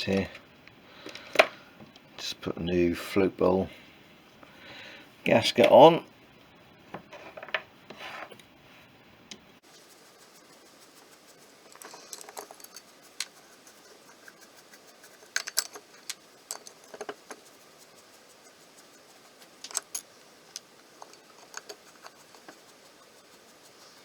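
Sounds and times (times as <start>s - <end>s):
small metal parts clinking: 11.7s - 13.3s, 15.1s - 17.4s, 19.6s - 22.5s.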